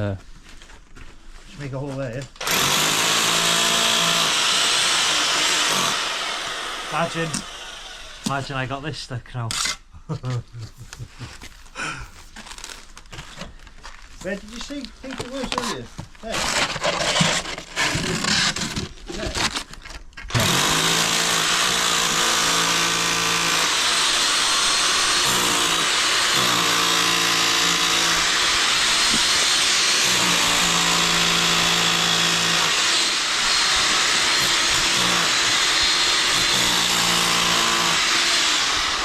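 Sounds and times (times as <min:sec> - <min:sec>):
electric drill drilling: 0:02.4 - 0:08.4, 0:20.3 - 0:39.0.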